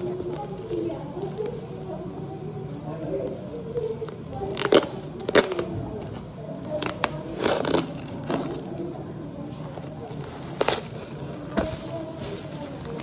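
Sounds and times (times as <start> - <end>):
cardboard and plastic rustling: 0.0 - 1.7, 9.6 - 13.0.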